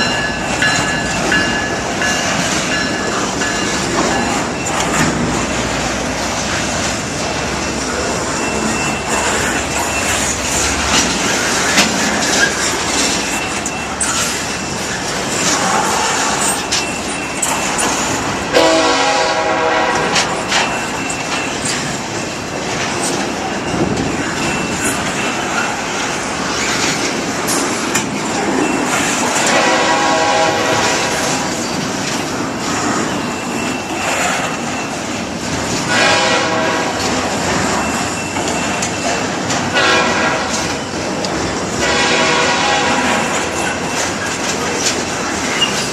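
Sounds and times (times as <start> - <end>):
freight train wheels on rails: 0.0 - 45.9
diesel locomotive horn blasts: 18.5 - 20.4, 29.3 - 31.5, 35.9 - 37.3, 39.7 - 40.8, 41.7 - 43.6.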